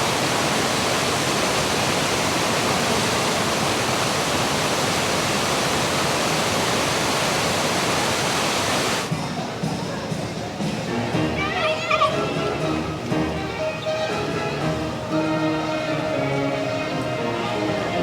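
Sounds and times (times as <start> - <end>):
rush of falling water: 0.0 - 9.2.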